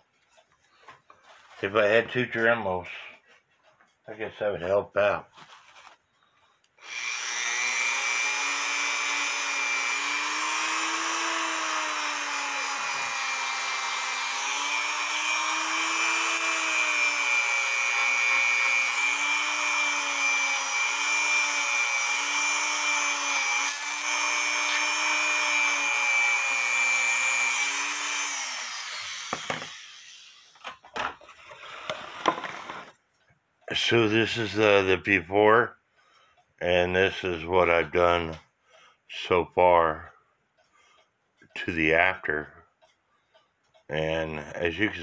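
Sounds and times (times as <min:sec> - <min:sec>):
rotary tool whining: 0:06.8 - 0:33.0.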